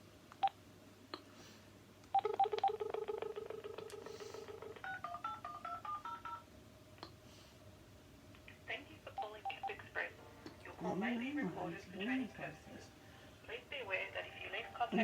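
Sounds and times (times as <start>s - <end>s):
touch-tone dialing beeps: 2.1s - 3.9s, 4.5s - 6.4s, 9.1s - 9.8s.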